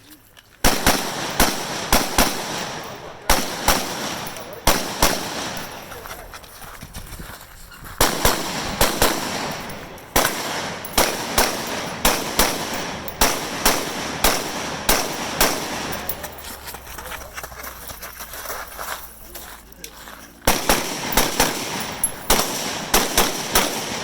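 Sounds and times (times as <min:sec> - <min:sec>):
rifle shots with echo: 0:00.6 - 0:06.4, 0:08.0 - 0:16.8, 0:20.4 - 0:24.0.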